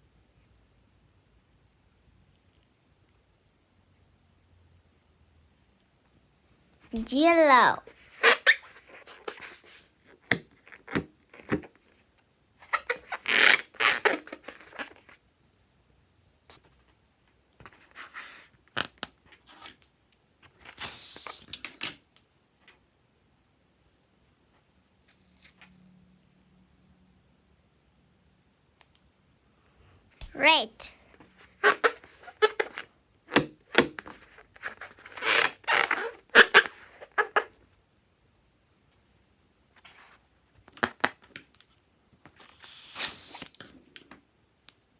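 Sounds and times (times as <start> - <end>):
crackling rubbing noises: 12.6 - 15.2, 34.1 - 37.6.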